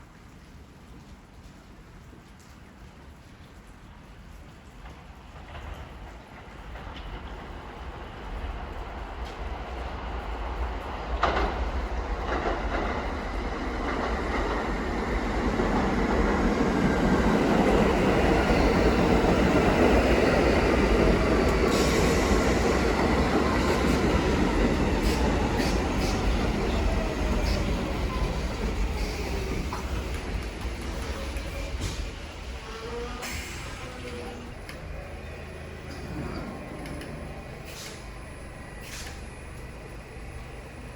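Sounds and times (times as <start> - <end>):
subway train rumble: 0.0 - 40.9
falling whine of braking train: 11.2 - 40.9.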